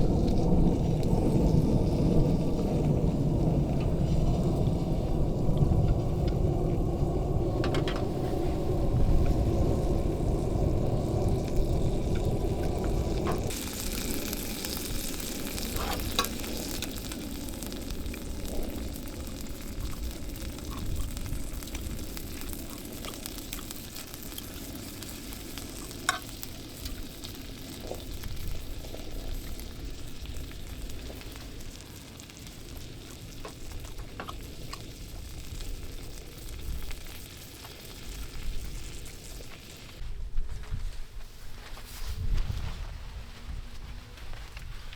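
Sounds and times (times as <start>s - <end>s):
low rumbling noise: 0.0s - 37.2s
food sizzling on grill: 0.0s - 40.0s.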